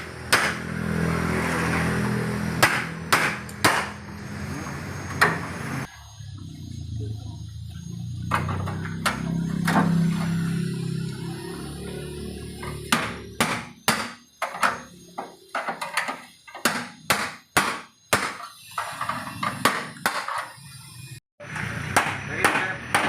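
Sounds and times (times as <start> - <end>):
hammer striking sheet metal: 0.0 - 0.7, 2.6 - 4.0, 12.9 - 14.2, 16.6 - 18.5.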